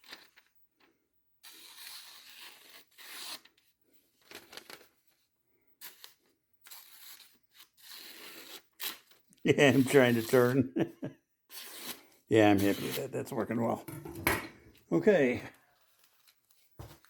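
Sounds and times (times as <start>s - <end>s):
knife slicing paper: 1.4s - 3.5s, 11.5s - 13.1s.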